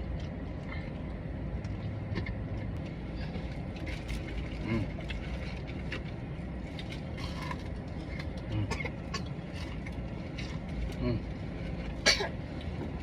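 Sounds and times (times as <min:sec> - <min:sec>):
low background rumble: 0:00.0 - 0:13.0
person chewing crispy chicken: 0:02.8 - 0:11.9.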